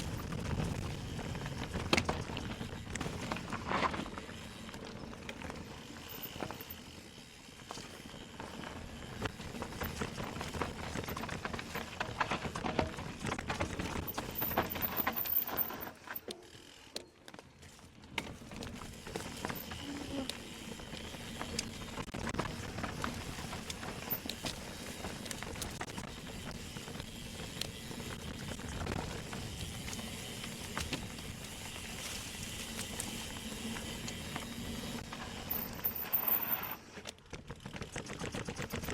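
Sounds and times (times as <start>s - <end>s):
bike knocks and rattles: 0.0s - 6.8s, 7.5s - 16.4s
bike tyres on dirt: 0.0s - 38.9s.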